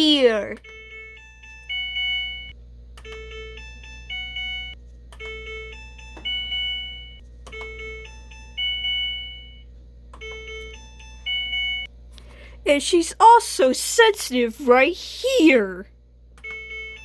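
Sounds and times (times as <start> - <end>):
washing machine beeper chime: 0.1 - 11.9, 16.4 - 17.0.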